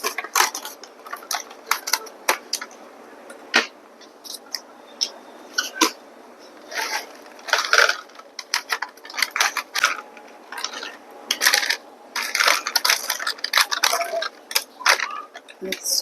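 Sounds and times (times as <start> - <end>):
snack packet crinkling: 6.7 - 15.6.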